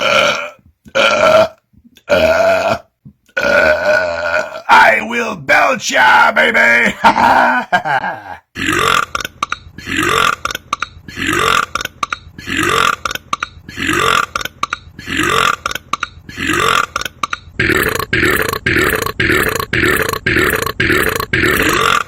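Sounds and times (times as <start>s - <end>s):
man belching: 0.0s - 5.2s, 6.9s - 22.0s.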